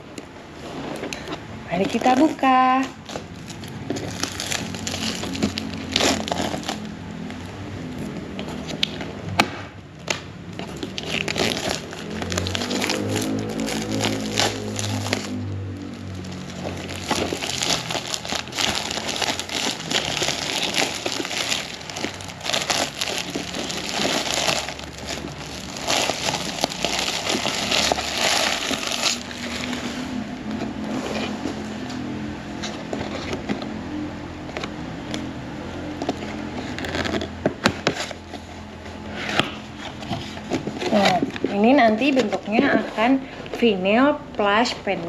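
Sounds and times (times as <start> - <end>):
packaging crinkling and tearing: 1.1 - 30.2, 36.0 - 38.5.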